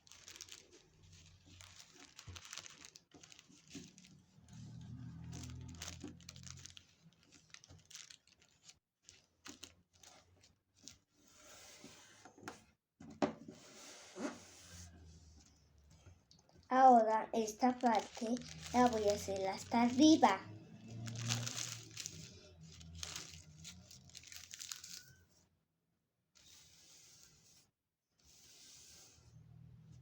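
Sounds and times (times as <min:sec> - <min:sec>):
tissue paper rustling: 0:00.0 - 0:12.2, 0:17.4 - 0:25.2.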